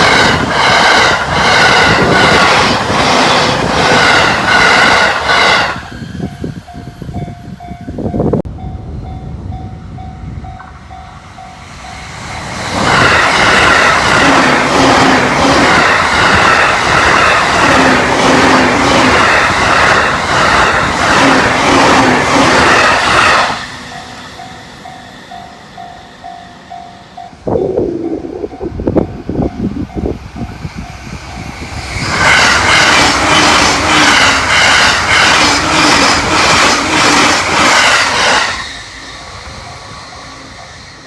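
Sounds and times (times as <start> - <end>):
train passing at high speed: 0.0 - 41.0
level crossing warning bell ringing: 6.2 - 12.5, 23.8 - 31.6.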